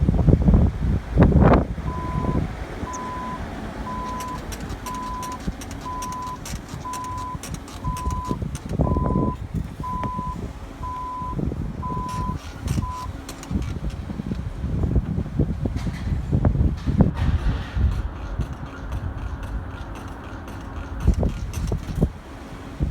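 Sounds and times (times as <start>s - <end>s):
low vehicle rumble: 0.0s - 22.9s
reversing warning beeps: 1.9s - 13.3s
sharp ticks: 2.1s - 10.4s, 11.9s - 14.0s, 17.2s - 22.1s.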